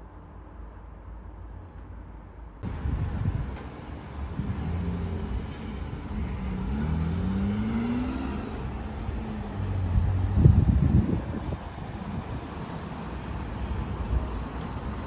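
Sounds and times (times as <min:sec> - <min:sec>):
vehicle motor speeding up: 0:06.2 - 0:11.1.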